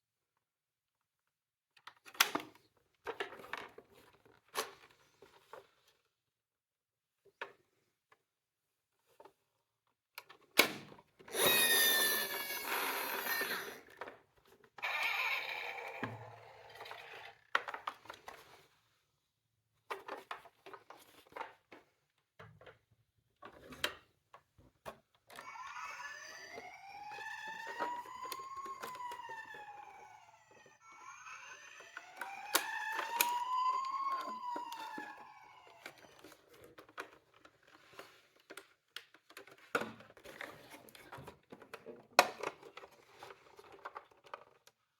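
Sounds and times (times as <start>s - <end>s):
toy electronic sirens: 11.3s - 13.9s, 14.8s - 17.3s, 25.3s - 36.6s.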